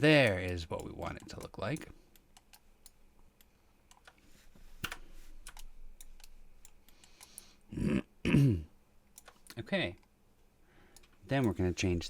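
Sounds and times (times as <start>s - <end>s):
keyboard typing: 4.8s - 7.5s, 9.1s - 10.1s
short vocal sound: 7.7s - 8.6s.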